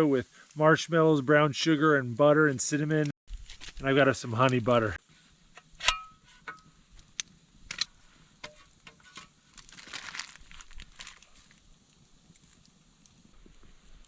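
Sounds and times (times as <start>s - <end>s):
dishes clinking: 5.8s - 6.2s
soft rustle: 7.9s - 14.0s.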